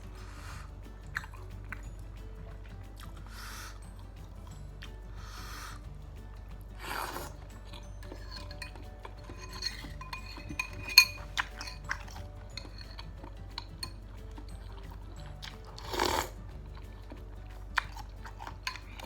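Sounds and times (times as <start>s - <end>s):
cutlery clinking against bowl: 0.0s - 19.0s
person slurping: 6.8s - 9.9s, 14.3s - 19.0s.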